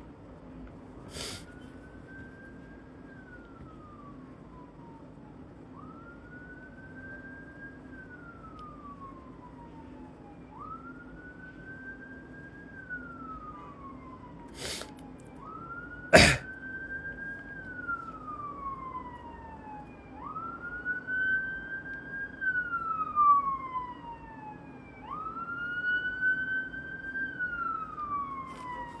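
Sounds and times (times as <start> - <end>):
emergency vehicle siren wailing: 1.1 - 29.0.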